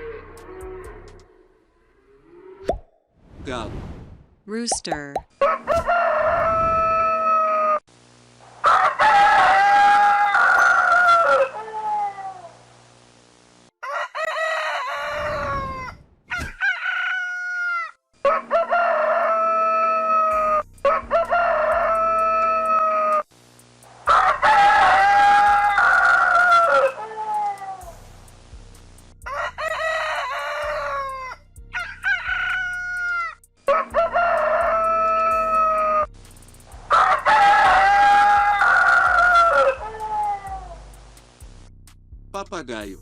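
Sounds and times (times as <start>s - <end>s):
rooster crowing: 5.4s - 7.8s, 8.6s - 12.6s, 13.8s - 23.3s, 24.1s - 28.0s, 29.2s - 36.1s, 36.9s - 40.9s.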